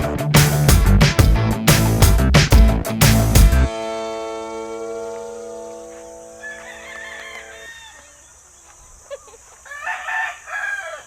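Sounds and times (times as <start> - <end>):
intro music chord: 0.0 - 7.6
rooster crowing: 5.0 - 8.3, 9.6 - 11.0.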